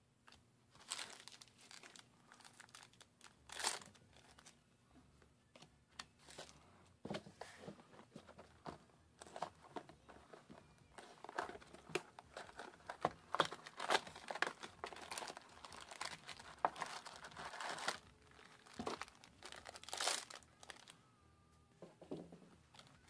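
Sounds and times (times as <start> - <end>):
foil wrappers crinkling and tearing: 0.8 - 4.6, 11.0 - 20.9.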